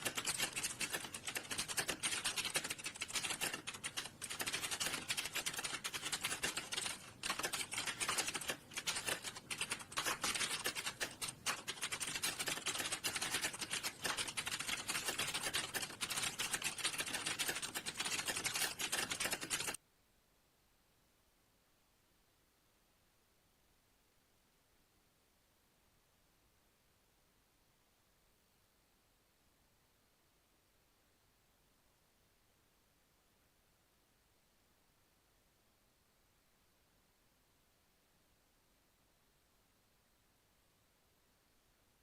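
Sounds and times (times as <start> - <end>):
typing on a computer keyboard: 0.0 - 19.8.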